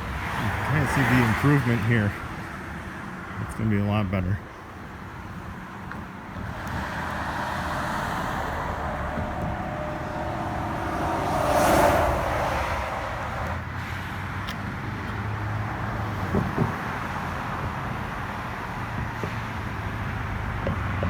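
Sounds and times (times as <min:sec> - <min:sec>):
steady traffic hiss: 0:00.0 - 0:16.2
vehicle passing close: 0:06.2 - 0:14.0.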